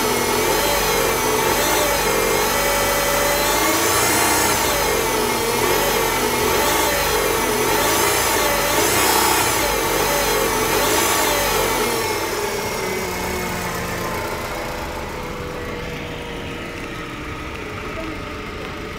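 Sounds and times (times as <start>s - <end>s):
car engine idling: 0.0s - 18.9s
power steering whining: 0.0s - 18.9s.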